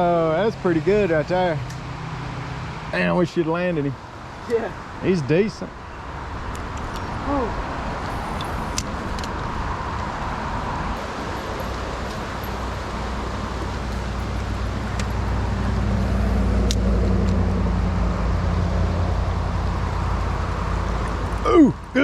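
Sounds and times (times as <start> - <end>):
creek water rushing: 7.2 - 16.7.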